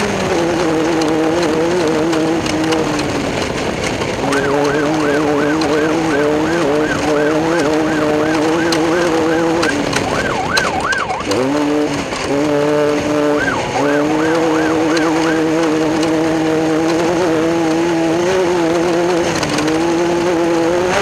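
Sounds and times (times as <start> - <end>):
engine running: 0.0 - 21.0
siren wailing: 4.2 - 11.9, 13.2 - 16.0.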